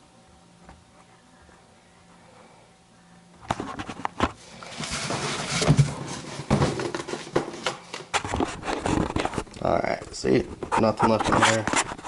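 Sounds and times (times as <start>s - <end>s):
packing rustling and scraping: 4.6s - 9.5s.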